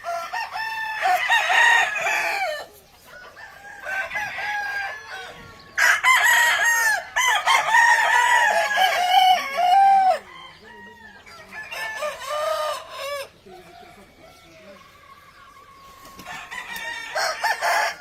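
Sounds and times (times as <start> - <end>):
distant hens clucking: 0.0 - 18.0
roosters crowing: 0.0 - 18.0.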